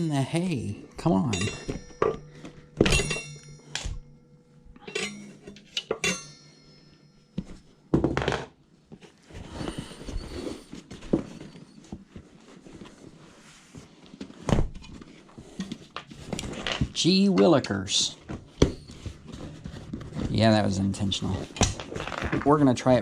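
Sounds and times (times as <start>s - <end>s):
metal tools clinking on wheel rim: 1.0s - 4.0s, 4.8s - 6.9s.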